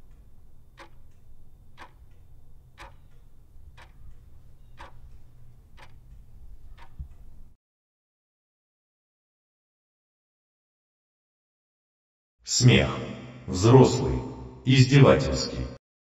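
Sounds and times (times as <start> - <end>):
clock ticking: 0.0 - 7.6
low steady hum: 0.0 - 7.6.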